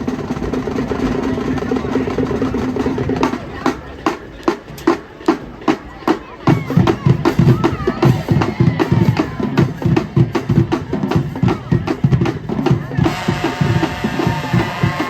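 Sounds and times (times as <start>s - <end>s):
marching drumline playing: 0.0s - 15.0s
horns playing a held chord: 13.0s - 15.0s.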